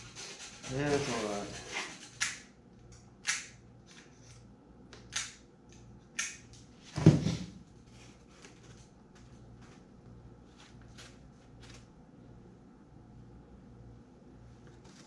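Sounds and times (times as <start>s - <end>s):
foam scraping: 0.0s - 2.2s
heavy thump: 7.0s - 7.6s.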